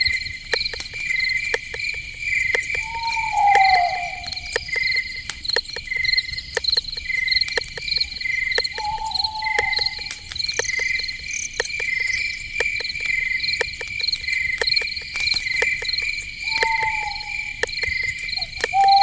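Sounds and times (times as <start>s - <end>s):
crickets chirping: 0.0s - 19.0s
sharp clicks: 0.0s - 19.0s
low drawn-out falling call: 2.8s - 4.6s, 16.5s - 17.6s.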